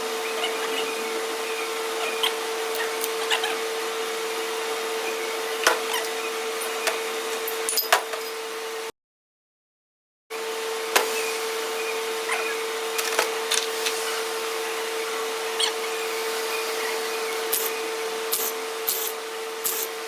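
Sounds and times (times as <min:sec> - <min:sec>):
mechanical drone with hum: 0:11.1 - 0:20.0.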